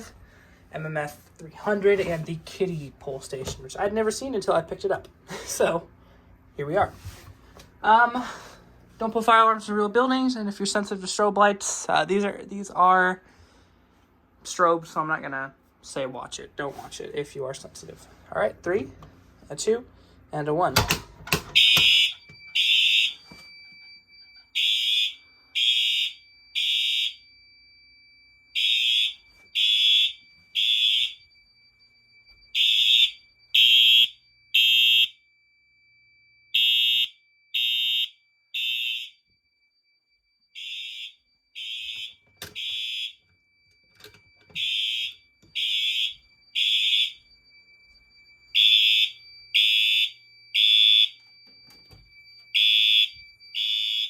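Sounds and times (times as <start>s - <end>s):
fire alarm horn beeps: 21.5s - 27.8s, 28.5s - 31.5s, 32.5s - 35.3s, 36.5s - 39.5s, 40.1s - 54.0s
faint steady high tone: 43.2s - 53.6s.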